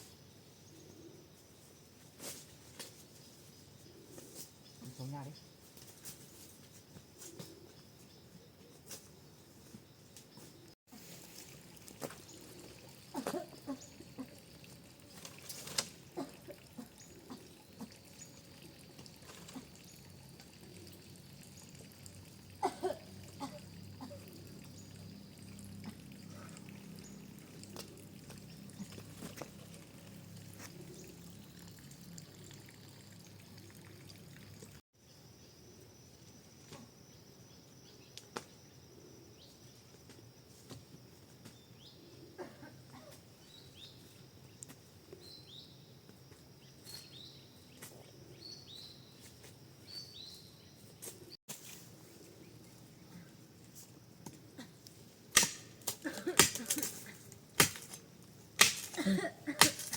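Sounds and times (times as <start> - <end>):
faint outdoor ambience: 0.0 - 59.9.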